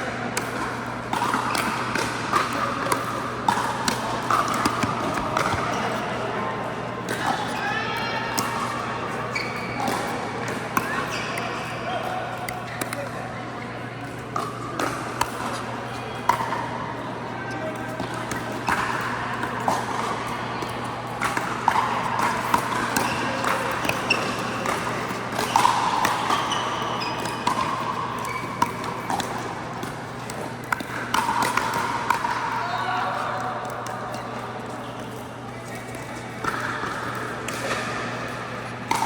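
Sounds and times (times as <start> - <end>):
ball bouncing: 21.3 - 32.4.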